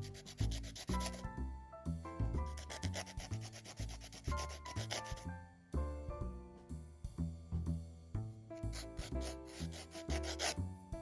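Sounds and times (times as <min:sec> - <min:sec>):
bass notes and chords: 0:01.2 - 0:02.7, 0:05.3 - 0:09.5.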